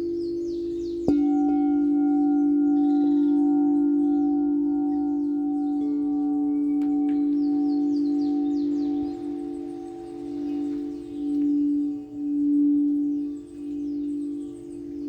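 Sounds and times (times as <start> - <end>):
humming singing bowl: 0.0 - 15.0
singing bowl struck and ringing: 0.0 - 15.0.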